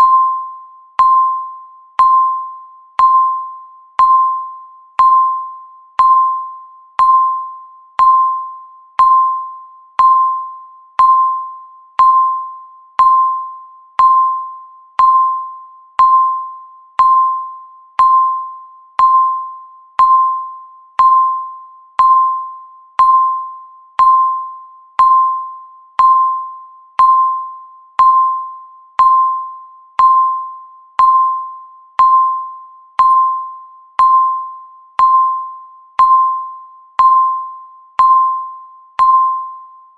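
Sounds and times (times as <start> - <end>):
countdown timer beep: 0.0 - 39.9.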